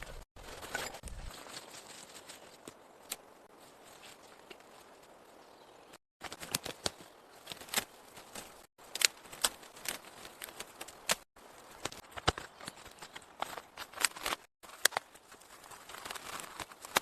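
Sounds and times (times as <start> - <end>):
sharp taps and cracks: 8.8 - 11.2.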